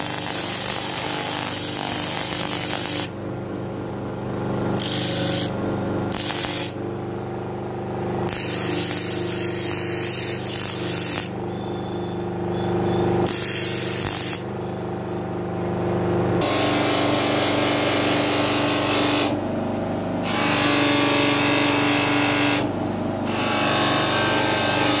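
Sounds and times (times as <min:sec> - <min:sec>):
sewing machine motor hum: 0:04.8 - 0:06.8, 0:08.2 - 0:11.3.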